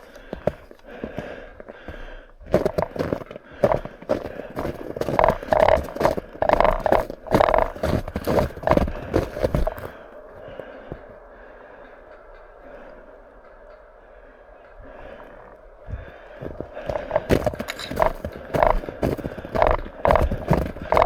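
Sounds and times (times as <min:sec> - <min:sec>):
footsteps crunching through snow: 0:02.5 - 0:10.0, 0:16.4 - 0:21.0.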